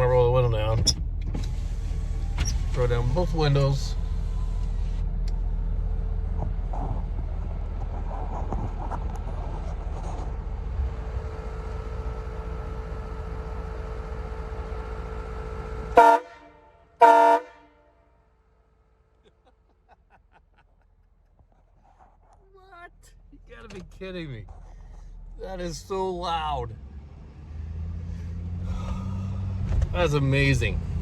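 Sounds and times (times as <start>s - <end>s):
loud train horn blasts: 16.0s - 17.8s.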